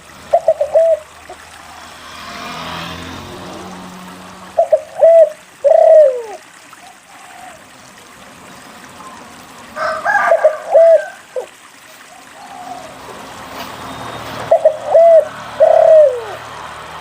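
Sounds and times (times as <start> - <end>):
dove cooing: 0.2 - 1.9, 4.5 - 7.7, 9.8 - 11.5, 12.1 - 13.2, 14.4 - 16.6.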